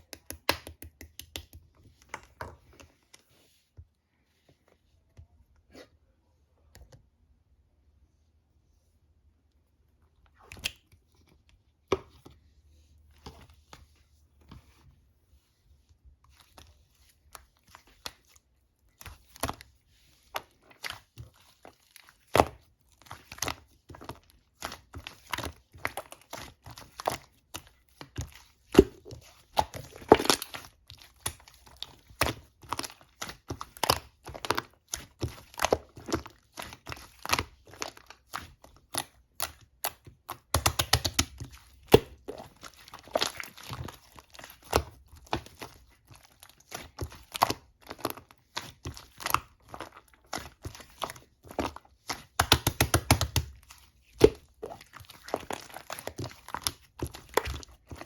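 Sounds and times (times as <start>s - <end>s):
slime clicking and crackling: 20.3s - 58.0s.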